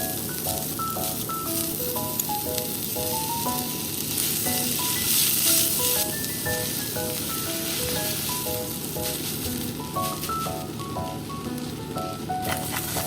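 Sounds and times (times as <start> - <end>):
food sizzling in a pan: 0.0 - 13.0
light plinking melody: 0.0 - 13.0.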